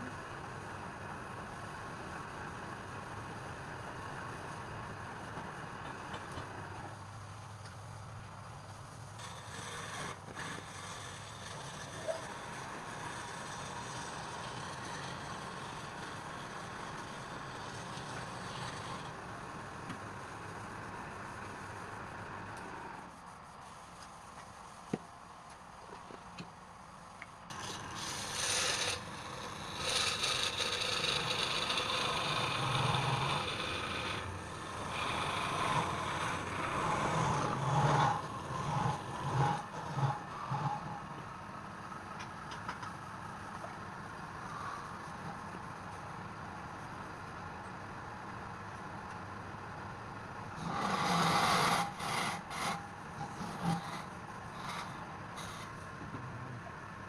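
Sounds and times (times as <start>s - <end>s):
steady low hum: 0.0s - 57.0s
tool scraping spinning wood: 8.6s - 20.6s, 27.5s - 41.2s, 50.5s - 56.2s
wood lathe running: 9.2s - 19.7s, 27.5s - 41.0s, 50.6s - 55.8s.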